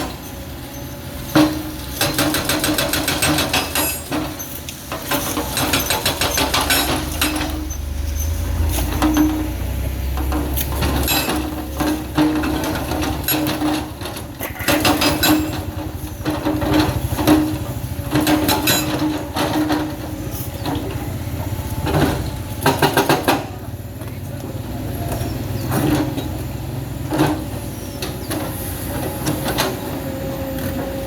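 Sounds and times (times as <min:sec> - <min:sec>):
heavy diesel engine under load: 0:00.0 - 0:31.0
steel bucket clanking on rock: 0:08.8 - 0:21.0.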